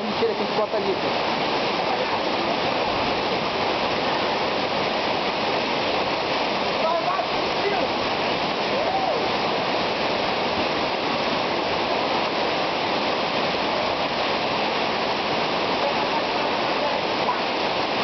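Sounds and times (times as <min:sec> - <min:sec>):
floodwater rushing: 0:00.0 - 0:18.0.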